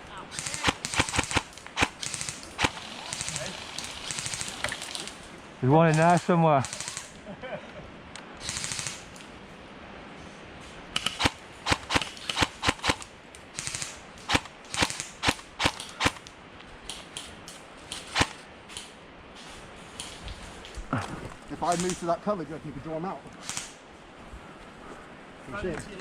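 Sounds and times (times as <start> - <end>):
airsoft gun shots: 0.4 - 4.6.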